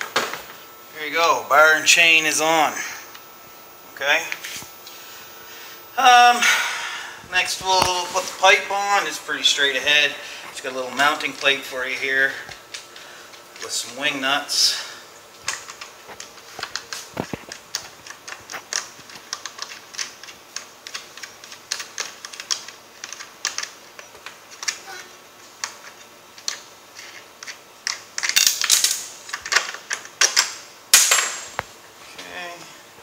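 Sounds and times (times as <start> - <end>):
metal parts clicking and clinking: 27.4 - 31.4
metal parts clattering: 28.2 - 30.4.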